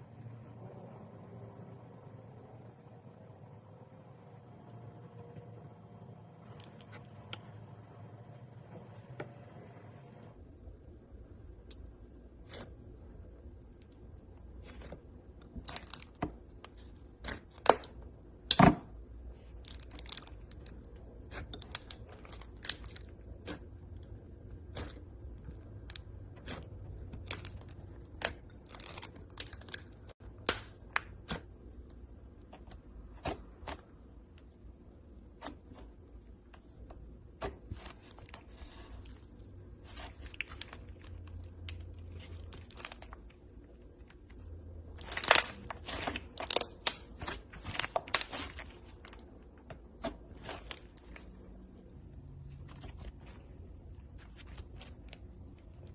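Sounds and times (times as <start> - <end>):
slime crackling and popping: 11.6 - 18.7, 19.3 - 34.5, 37.4 - 49.4.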